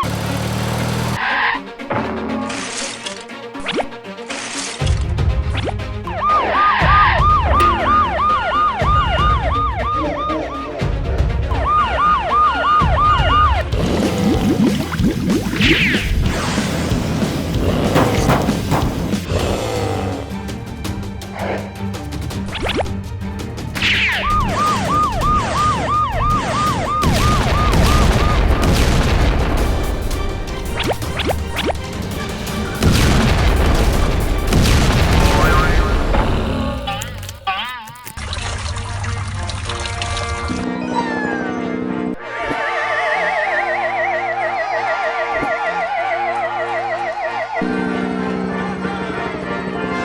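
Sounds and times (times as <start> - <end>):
background music: 0.0 - 50.0
electronic siren wailing: 6.1 - 13.8, 23.9 - 28.7, 40.5 - 48.7.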